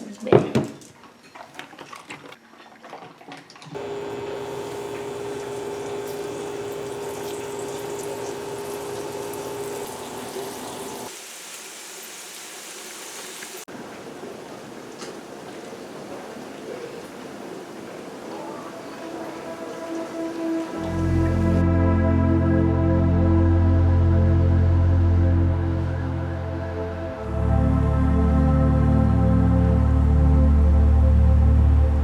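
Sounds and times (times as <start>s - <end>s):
faint hum in pipes: 3.8s - 11.1s, 13.7s - 32.0s
kitchen tap running: 3.8s - 12.6s.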